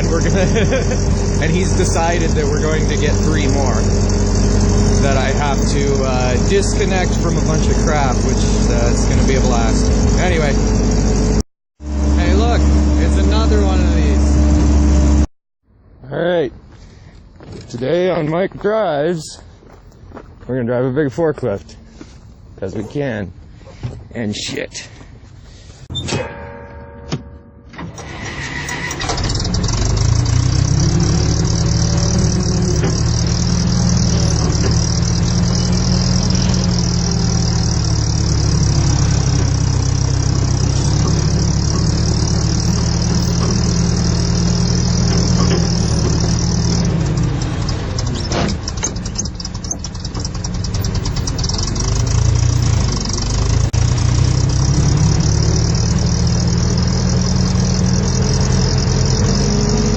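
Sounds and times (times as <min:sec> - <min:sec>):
forklift engine droning: 0:00.0 - 0:15.3, 0:25.6 - 0:59.9
forklift engine starting: 0:00.0 - 0:15.3, 0:27.7 - 0:59.9.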